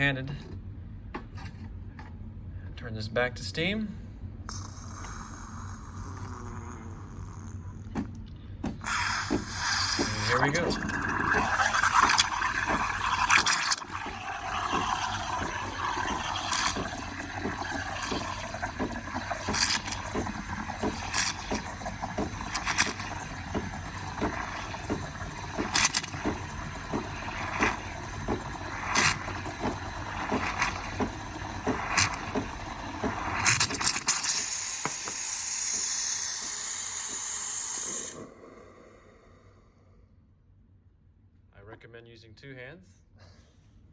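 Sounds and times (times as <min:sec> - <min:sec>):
steam wand frothing milk: 0:08.8 - 0:39.3.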